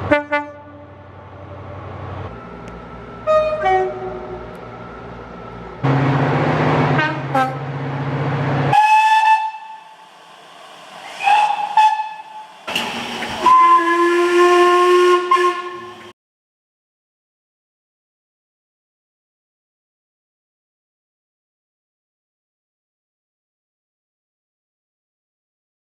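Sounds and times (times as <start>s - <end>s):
train horn blasts: 0.0s - 1.6s, 3.2s - 4.6s, 5.8s - 7.8s, 8.7s - 10.0s, 11.2s - 12.6s, 13.4s - 16.1s
hissing: 9.6s - 14.6s.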